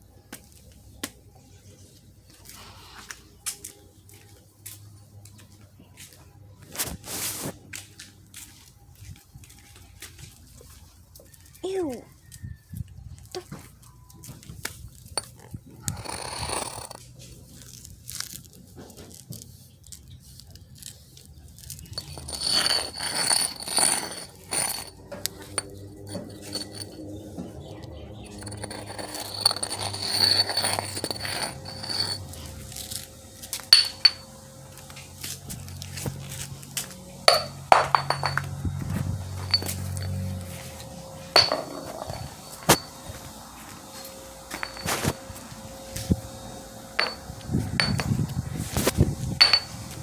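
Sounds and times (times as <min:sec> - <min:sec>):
small hard objects clinking: 0:13.8 - 0:19.2, 0:19.9 - 0:46.0, 0:46.9 - 0:50.0
faint low hum: 0:20.0 - 0:50.0.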